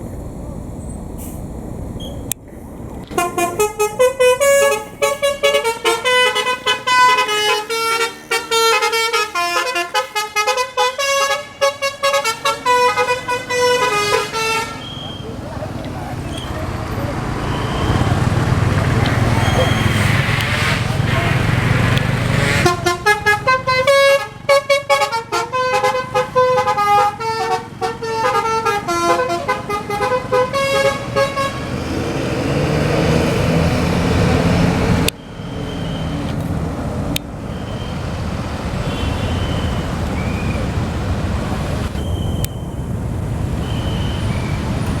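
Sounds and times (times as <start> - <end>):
bus engine rumbling: 0.0 - 45.0
bus musical horn melody: 3.1 - 15.3, 20.6 - 32.6.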